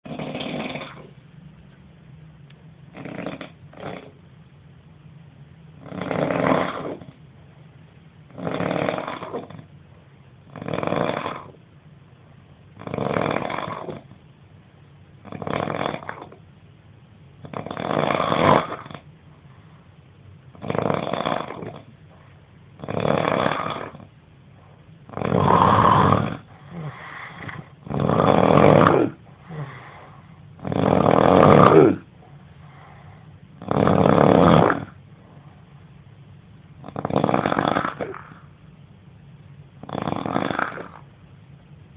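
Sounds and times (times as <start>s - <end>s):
man snoring loudly: 0.1s - 1.0s, 3.0s - 4.1s, 5.8s - 7.1s, 8.4s - 9.6s, 10.5s - 11.5s, 12.8s - 14.0s, 15.3s - 16.3s, 17.4s - 19.0s, 20.6s - 21.8s, 22.8s - 24.1s, 25.1s - 29.9s, 30.6s - 32.0s, 33.6s - 35.0s, 36.8s - 38.4s, 39.9s - 41.0s.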